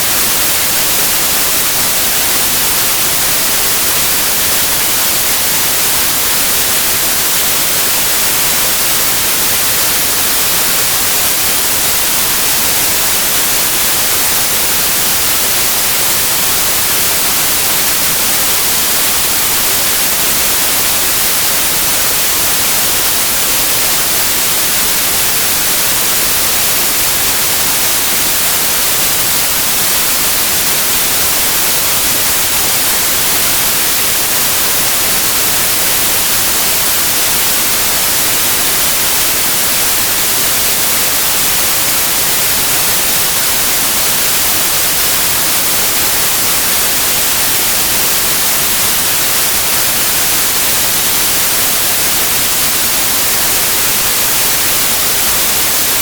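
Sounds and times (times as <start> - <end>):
white noise hiss: 0.0 - 56.0.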